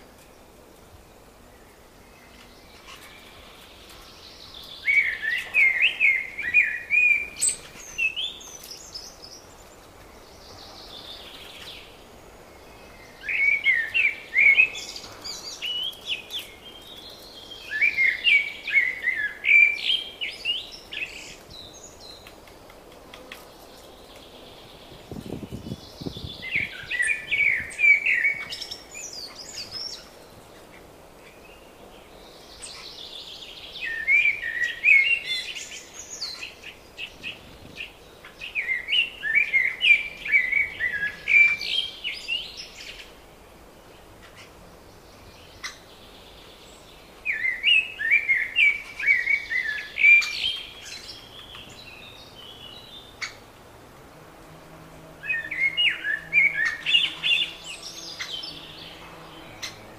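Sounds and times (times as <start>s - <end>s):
songbird warbling: 45.4s - 53.5s, 55.2s - 59.9s.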